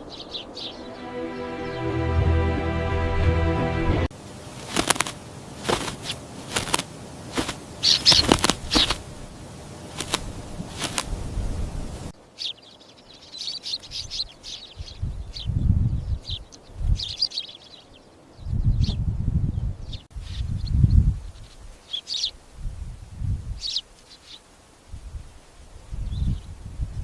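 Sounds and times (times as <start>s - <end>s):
wings fluttering: 4.6s - 11.4s
small birds chirping: 4.7s - 11.2s, 12.2s - 22.4s, 23.5s - 24.5s.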